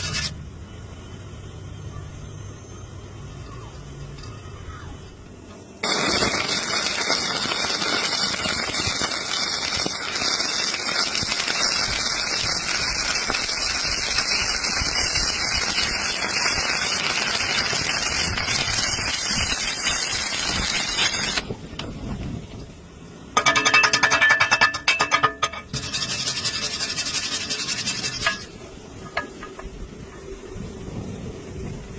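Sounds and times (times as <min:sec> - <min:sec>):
welding arc crackling: 0:00.0 - 0:00.4, 0:05.8 - 0:22.7, 0:23.4 - 0:29.6.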